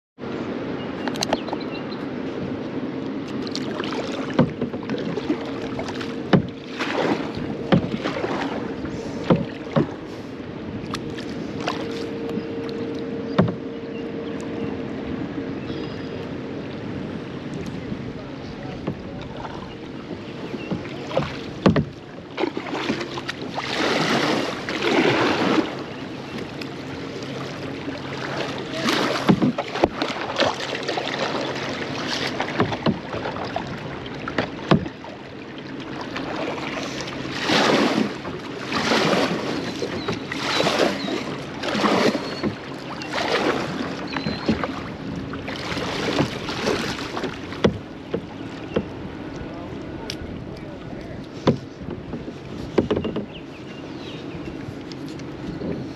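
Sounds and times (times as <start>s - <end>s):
rushing water: 0.3s - 55.9s
paddle strokes in water: 0.8s - 55.9s
splashing and dripping: 20.6s - 48.9s.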